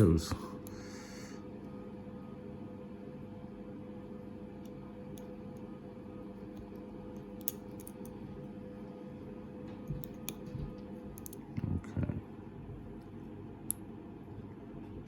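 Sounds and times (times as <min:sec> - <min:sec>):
washing machine humming: 0:00.0 - 0:15.0
lock pick metallic clicks: 0:11.2 - 0:11.4.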